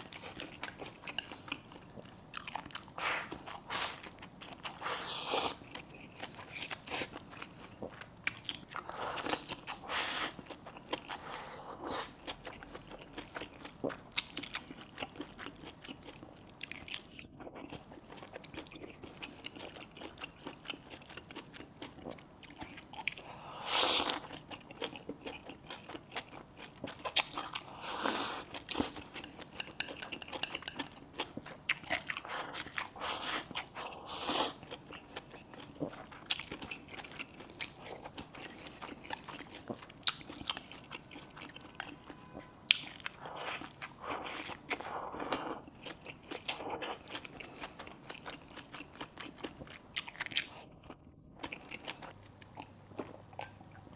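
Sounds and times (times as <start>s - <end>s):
person chewing food: 0.0s - 53.9s.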